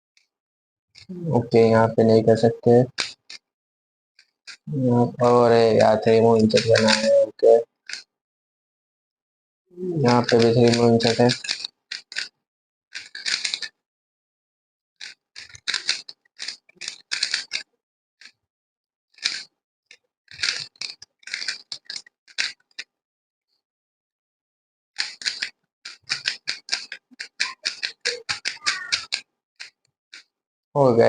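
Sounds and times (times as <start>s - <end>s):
puzzle cube plastic clicks: 2.9s - 3.4s, 5.2s - 7.2s, 10.1s - 12.3s, 13.0s - 13.8s, 15.0s - 18.4s, 19.2s - 19.5s, 20.4s - 22.9s, 25.0s - 30.3s.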